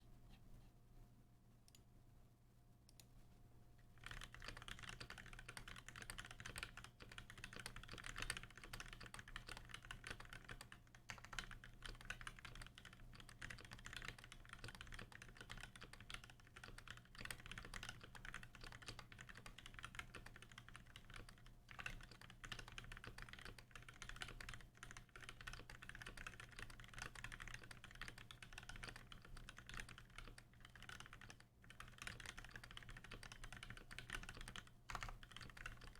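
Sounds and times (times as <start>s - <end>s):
fast typing on mechanical keyboard: 4.0s - 35.9s.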